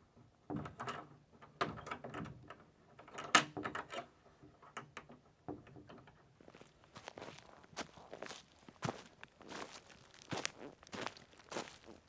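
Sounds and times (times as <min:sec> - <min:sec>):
footsteps on dry leaves and twigs: 0:06.4 - 0:12.0.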